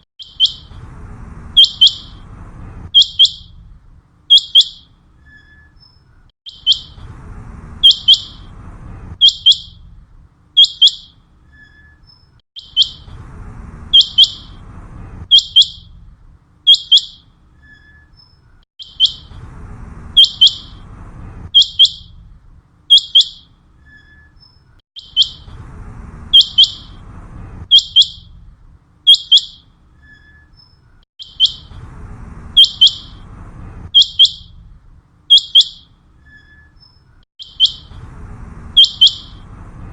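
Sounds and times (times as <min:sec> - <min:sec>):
faint low rumble: 0:00.0 - 0:05.3, 0:06.1 - 0:11.5, 0:12.8 - 0:16.6, 0:18.5 - 0:22.9, 0:25.3 - 0:29.0, 0:31.5 - 0:35.3
quail calling: 0:38.8 - 0:39.4.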